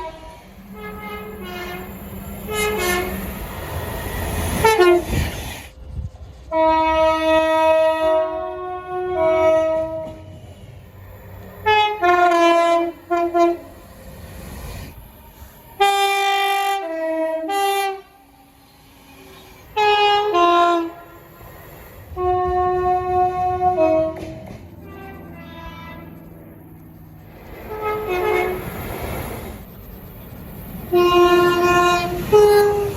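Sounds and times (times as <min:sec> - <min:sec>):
locomotive air horn blasts: 0:00.0 - 0:03.2, 0:04.6 - 0:05.2, 0:06.5 - 0:10.4, 0:11.6 - 0:13.7, 0:15.8 - 0:18.2, 0:19.8 - 0:21.2, 0:22.1 - 0:26.2, 0:27.7 - 0:28.7, 0:30.9 - 0:32.9.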